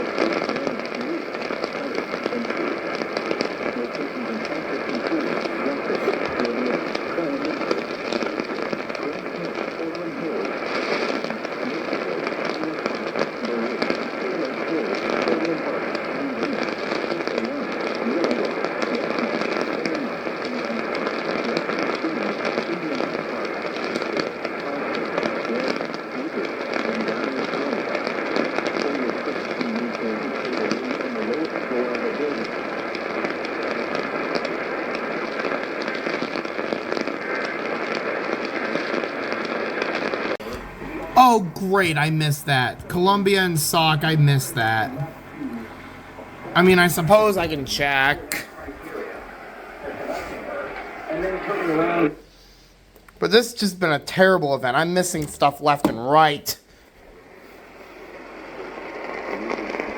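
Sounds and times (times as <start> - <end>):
radio static hiss and crackle: 0.0 - 59.9
faint radio voice: 3.7 - 7.7, 40.4 - 52.2.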